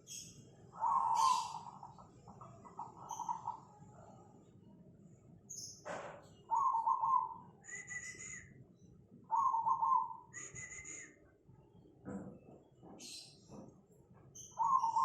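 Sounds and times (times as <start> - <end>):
dove cooing: 0.8 - 4.1, 6.5 - 8.3, 9.3 - 10.7, 14.6 - 15.0.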